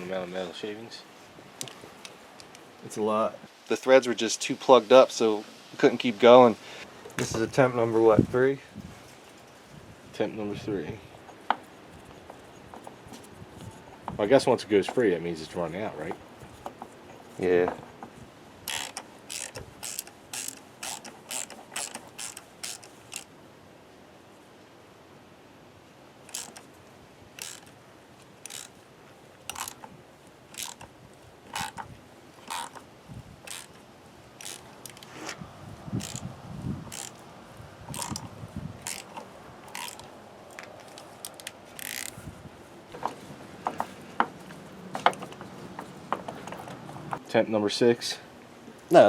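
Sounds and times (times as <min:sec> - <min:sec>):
ratchet wrench clicking: 0:18.7 - 0:23.3, 0:26.3 - 0:26.7, 0:27.4 - 0:27.7, 0:28.4 - 0:28.8, 0:29.5 - 0:29.8, 0:30.5 - 0:30.9, 0:31.5 - 0:31.8, 0:32.5 - 0:32.8, 0:33.5 - 0:33.8, 0:34.4 - 0:35.0, 0:36.0 - 0:36.2, 0:36.9 - 0:37.2, 0:37.9 - 0:40.1, 0:40.9 - 0:42.2.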